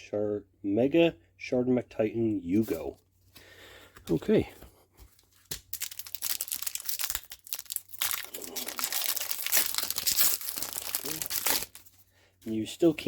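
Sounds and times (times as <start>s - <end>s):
wrapper crinkling: 5.3s - 12.0s.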